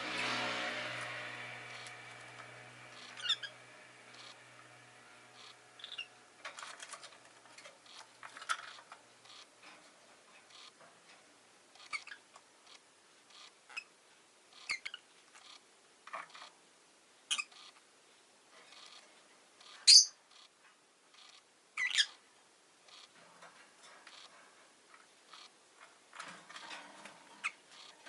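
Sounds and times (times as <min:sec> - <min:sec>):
lovebird chirping: 0:03.0 - 0:04.4, 0:05.4 - 0:06.2, 0:11.8 - 0:13.9, 0:14.5 - 0:15.6, 0:17.3 - 0:17.8, 0:19.6 - 0:20.5, 0:21.1 - 0:22.2.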